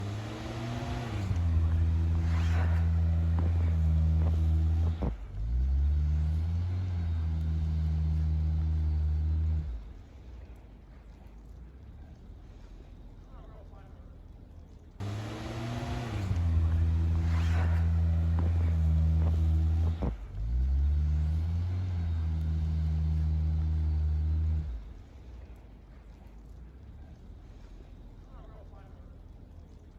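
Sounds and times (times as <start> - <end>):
truck engine at high revs: 0.0 - 10.0, 15.0 - 25.0.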